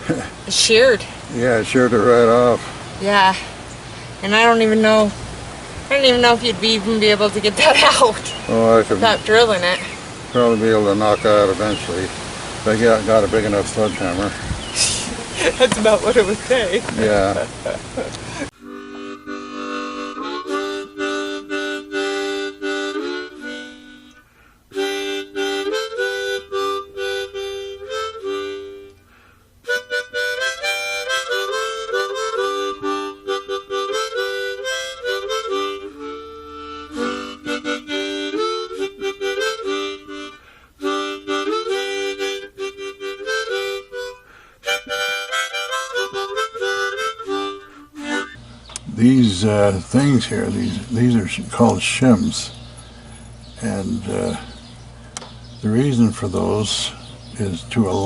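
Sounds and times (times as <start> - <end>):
harmonica tune: 5.9 - 12.0, 18.4 - 54.8.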